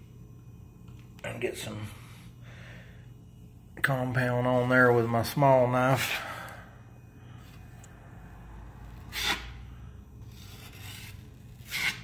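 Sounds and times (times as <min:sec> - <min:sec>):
drywall knife scraping compound: 0:09.0 - 0:09.4, 0:10.3 - 0:12.0.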